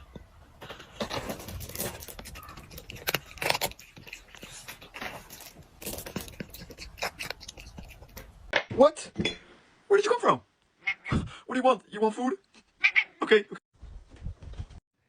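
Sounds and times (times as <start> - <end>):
rustling and scraping: 0.6 - 8.4.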